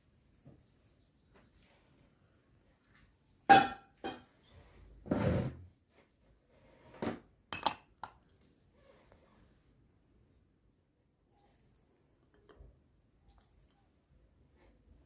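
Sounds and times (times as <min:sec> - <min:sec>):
kitchenware clinking: 0:07.5 - 0:08.2.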